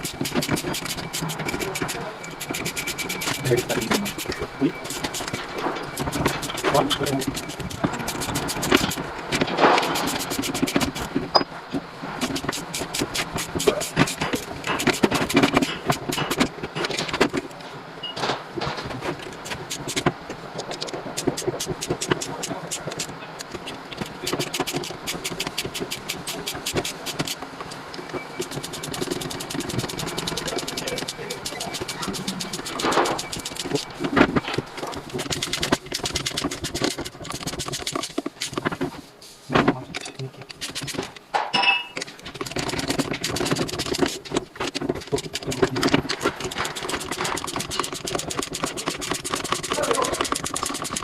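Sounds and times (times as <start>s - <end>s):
hand tools clicking and knocking: 0.0s - 11.4s, 12.2s - 17.6s, 18.2s - 38.9s, 39.8s - 51.0s
low steady hum: 0.0s - 51.0s
tools clicking and knocking: 39.9s - 51.0s.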